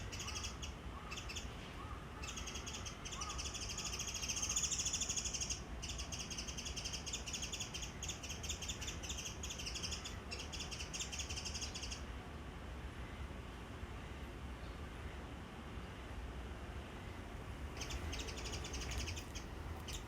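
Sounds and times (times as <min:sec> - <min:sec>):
bird chattering: 0:17.8 - 0:20.0.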